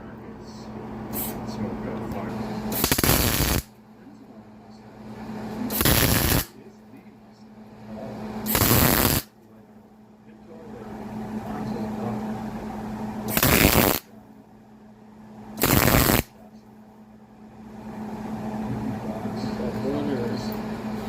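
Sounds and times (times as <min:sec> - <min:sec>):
arc welder crackling: 0:02.5 - 0:03.8, 0:05.5 - 0:06.6, 0:08.4 - 0:09.4, 0:13.2 - 0:14.1, 0:15.6 - 0:16.4.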